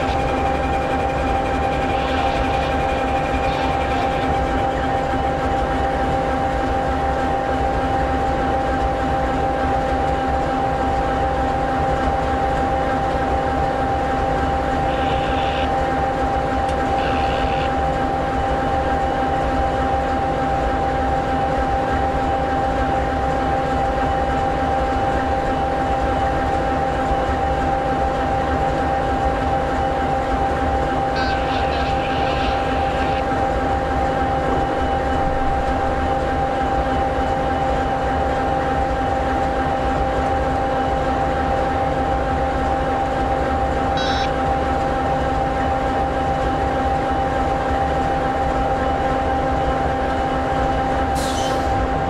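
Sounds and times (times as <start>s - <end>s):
diesel locomotive idling: 0.0s - 52.0s
brief high-pitched sounds: 44.0s - 44.3s.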